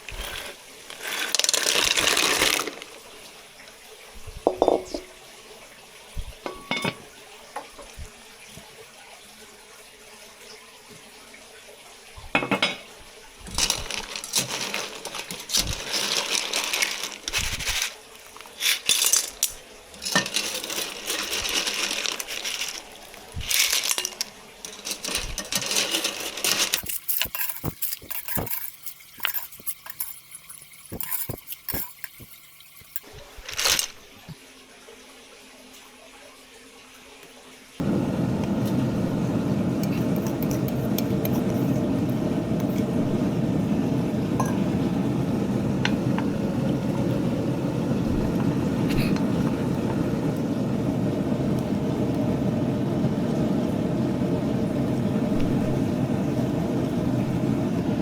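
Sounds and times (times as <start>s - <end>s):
running or splashing water: 0.0s - 37.9s
hard items clinking against dishes: 4.5s - 5.1s, 6.4s - 7.1s, 23.4s - 33.9s.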